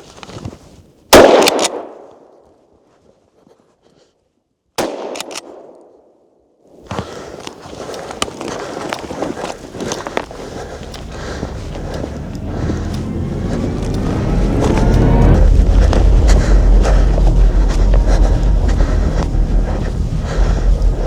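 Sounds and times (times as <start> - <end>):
rustle and crunch of movement: 0.0 - 1.1, 2.4 - 4.6, 6.7 - 21.0
gunshots: 1.1 - 1.8.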